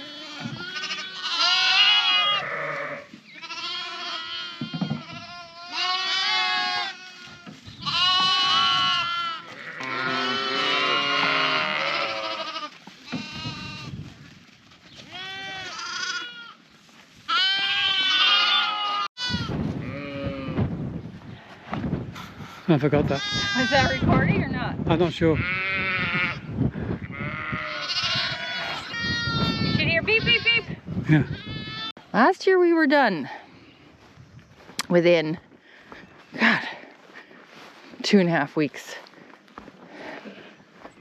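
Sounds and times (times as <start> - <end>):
sheep and lambs bleating: 0.0 - 14.1, 15.0 - 20.6, 23.0 - 24.2, 25.4 - 32.0.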